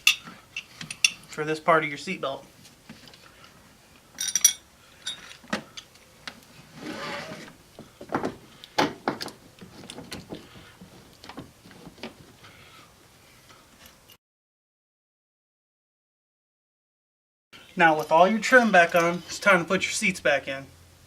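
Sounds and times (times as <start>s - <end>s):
short rubbing scrape: 6.7s - 7.6s.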